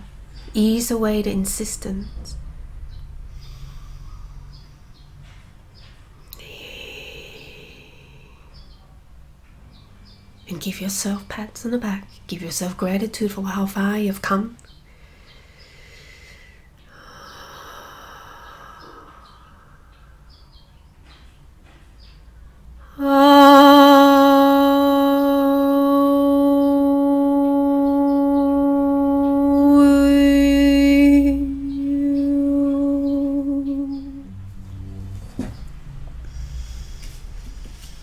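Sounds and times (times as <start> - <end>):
long held musical note: 23.0 - 36.9.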